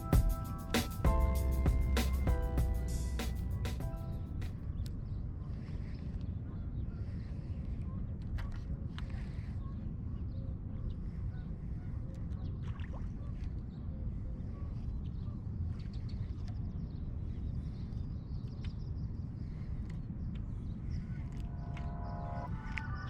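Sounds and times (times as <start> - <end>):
steady low rumble: 0.0 - 5.1.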